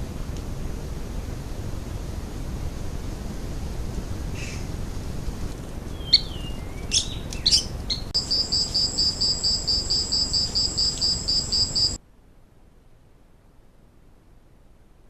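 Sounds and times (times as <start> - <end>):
continuous high hum: 0.0 - 15.0
bird calls: 5.9 - 12.0
insect calling in pulses: 5.9 - 12.0.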